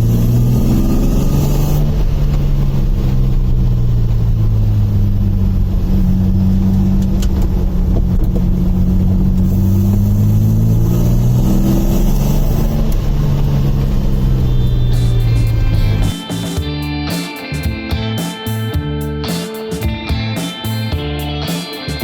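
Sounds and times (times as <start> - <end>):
car engine humming: 0.0 - 22.0.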